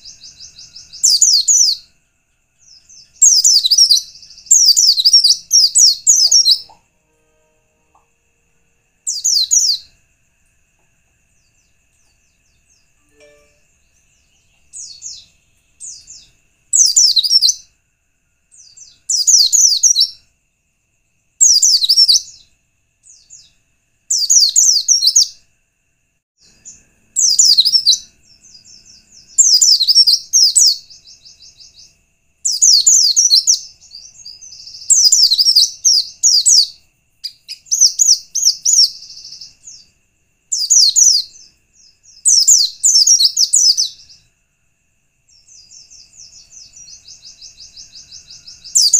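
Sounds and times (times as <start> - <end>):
faint steady high tone: 0.0 - 25.4.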